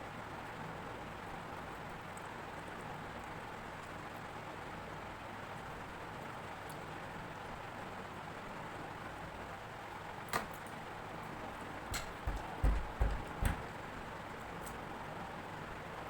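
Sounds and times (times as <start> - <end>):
soft deep thumps: 12.2 - 13.6.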